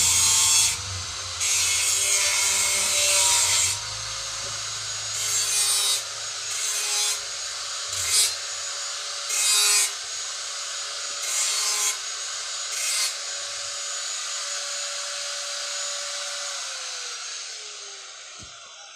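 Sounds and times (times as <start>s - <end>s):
harsh grinding: 0.0s - 8.5s
angle grinder whining: 0.0s - 18.9s.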